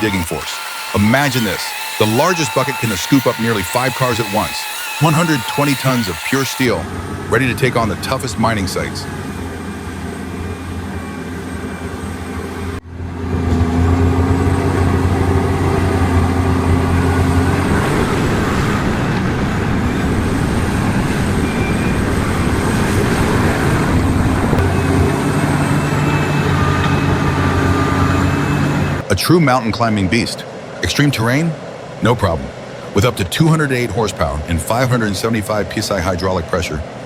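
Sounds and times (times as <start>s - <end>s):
excavator engine running: 0.0s - 29.1s.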